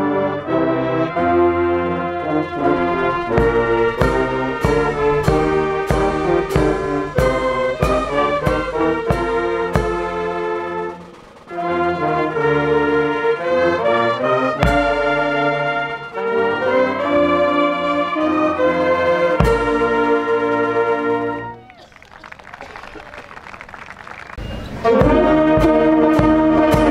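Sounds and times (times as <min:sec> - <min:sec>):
brass band music: 0:00.0 - 0:22.6, 0:23.4 - 0:26.9
steady drum beat: 0:02.0 - 0:21.1, 0:24.8 - 0:26.9.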